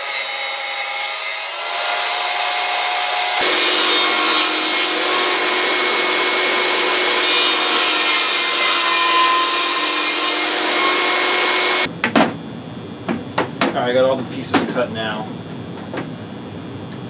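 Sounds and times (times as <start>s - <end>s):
power saw cutting wood: 0.0s - 11.9s.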